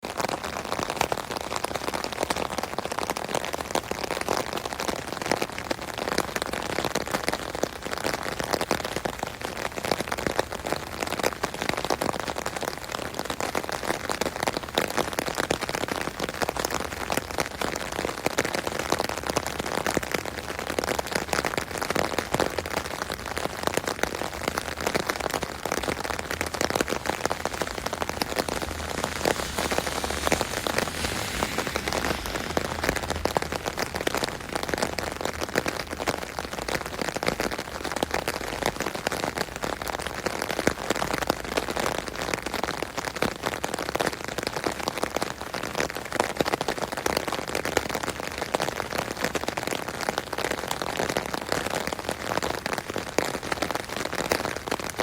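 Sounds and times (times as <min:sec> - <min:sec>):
rain pattering on umbrella: 0:00.0 - 0:55.0.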